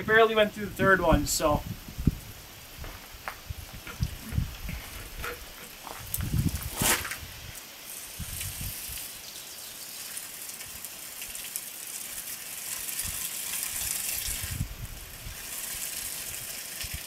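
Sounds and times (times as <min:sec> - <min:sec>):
water gushing from plastic jug: 0:10.1 - 0:17.0.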